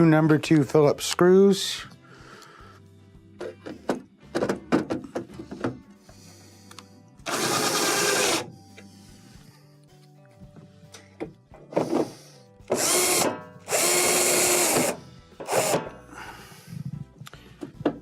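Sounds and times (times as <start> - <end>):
faint background music: 0.0 - 18.0
cordless power driver motor: 7.3 - 8.5, 12.7 - 15.9.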